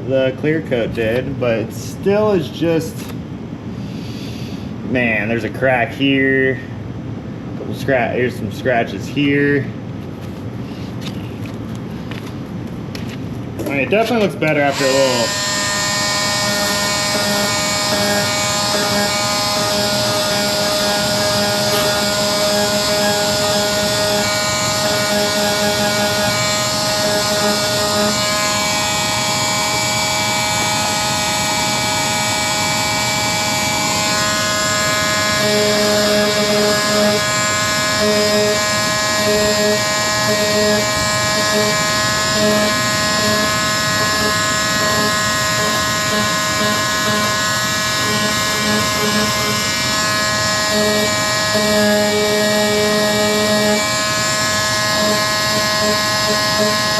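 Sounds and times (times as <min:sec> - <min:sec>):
pulsing hum: 0:13.5 - 0:56.9
electric power sander whining: 0:13.6 - 0:56.9.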